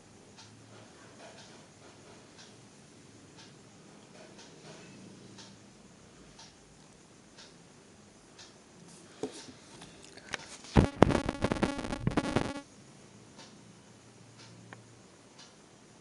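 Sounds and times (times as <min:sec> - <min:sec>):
faint ticking: 0:03.3 - 0:04.6, 0:05.4 - 0:07.7, 0:10.8 - 0:12.6
electronic music with quick beat: 0:10.8 - 0:12.6.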